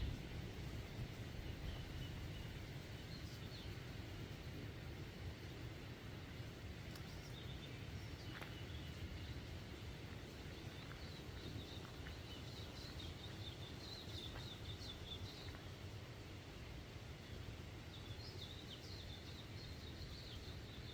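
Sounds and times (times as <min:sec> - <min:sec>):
steady low rumble: 0:00.0 - 0:17.8
small birds chirping: 0:06.3 - 0:16.2.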